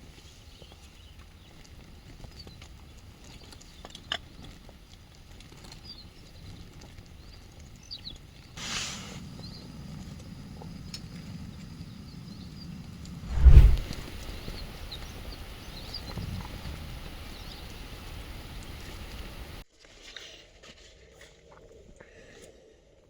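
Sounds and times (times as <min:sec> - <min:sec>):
brief rustle: 0:13.3 - 0:14.2
low steady rumble: 0:13.3 - 0:14.2.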